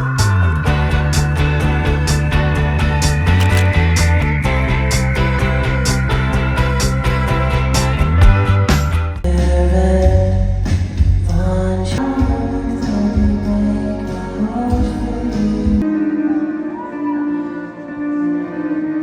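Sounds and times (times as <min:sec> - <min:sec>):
singing with guitar and bass: 0:09.2 - 0:18.8.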